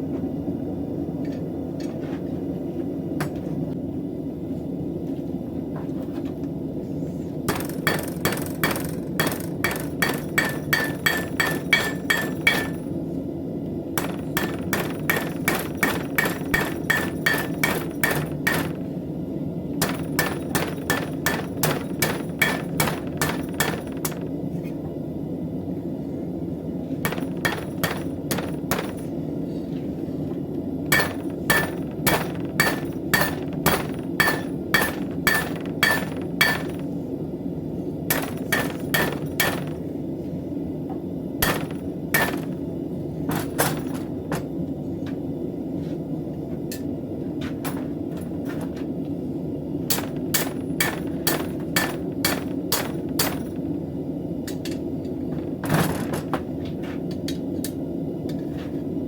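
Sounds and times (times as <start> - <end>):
hammer striking steel on anvil: 7.5 - 12.9, 14.0 - 18.8, 19.8 - 24.2, 27.0 - 29.1, 30.9 - 36.9, 38.1 - 39.8, 41.4 - 42.6, 49.9 - 53.6.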